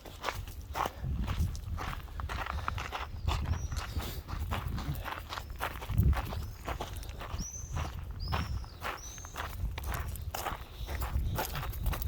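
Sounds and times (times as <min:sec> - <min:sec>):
footsteps on a hard surface: 0:00.0 - 0:12.0
bird chirp: 0:03.0 - 0:04.0, 0:05.3 - 0:09.6.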